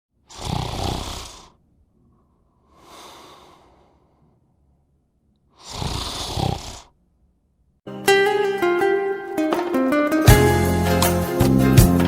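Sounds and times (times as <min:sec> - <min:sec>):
person snoring: 0:00.2 - 0:01.6, 0:02.5 - 0:04.4, 0:05.5 - 0:07.0.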